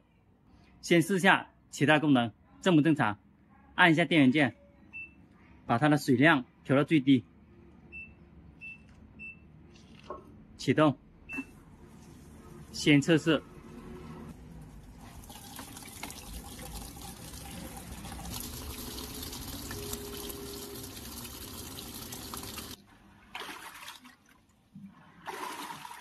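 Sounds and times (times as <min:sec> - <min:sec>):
water filling washing machine tub: 0:13.5 - 0:26.0.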